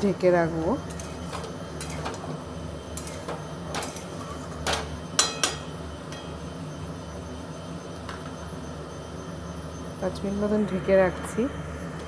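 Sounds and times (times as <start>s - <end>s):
steady low hum: 0.0s - 12.0s
metal utensil scraping a pan: 3.0s - 4.6s.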